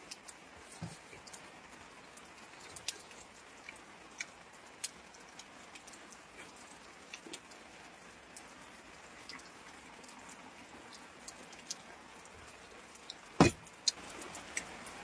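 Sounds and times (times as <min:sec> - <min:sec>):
rain falling: 0:00.0 - 0:15.0
loud knock: 0:13.4 - 0:13.6.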